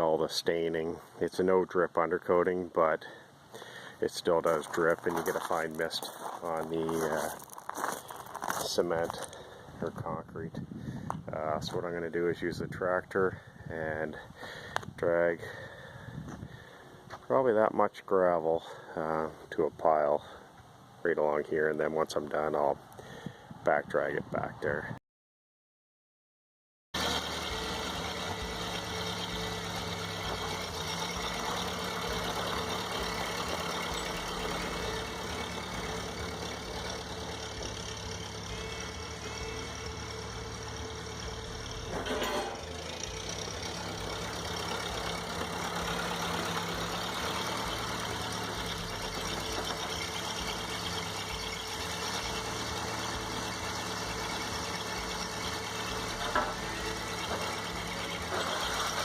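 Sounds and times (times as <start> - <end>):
tractor engine running: 3.5 - 12.7, 27.0 - 59.0
gravel dragging: 3.6 - 10.2, 27.0 - 59.0.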